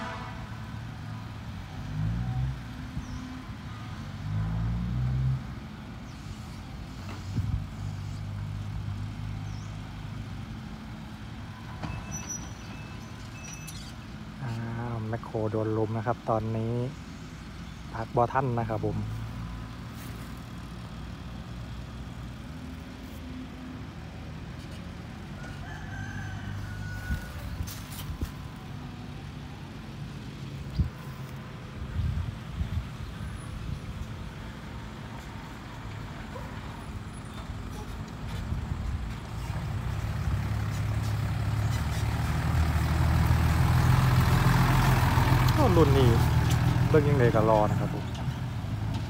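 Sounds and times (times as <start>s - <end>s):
dump truck diesel engine: 0.0s - 49.0s
rooster crowing: 25.3s - 27.6s.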